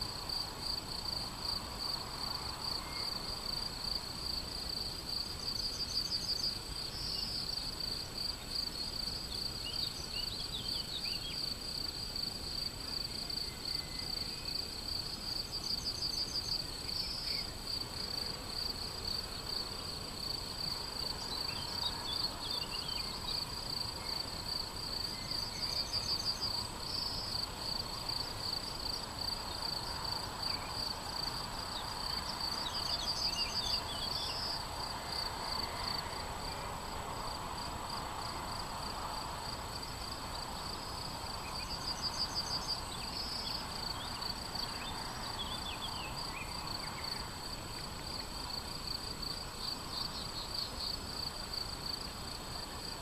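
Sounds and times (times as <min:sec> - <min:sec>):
crickets trilling: 0:00.0 - 0:53.0
bird singing: 0:09.6 - 0:11.5, 0:21.2 - 0:23.4, 0:32.6 - 0:34.6, 0:41.5 - 0:47.2.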